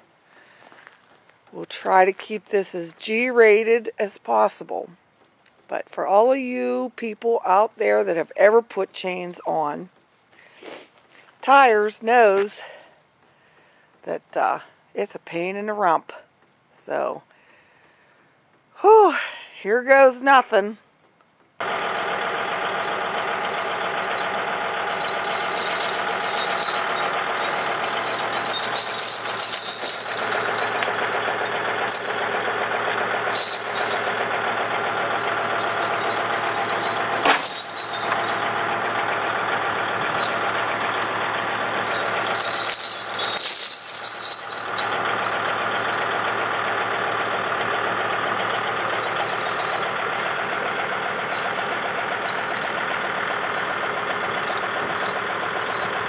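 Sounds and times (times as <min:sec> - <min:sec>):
tire chains clinking and rattling: 0:21.6 - 0:56.0
tractor diesel engine idling: 0:21.6 - 0:56.0.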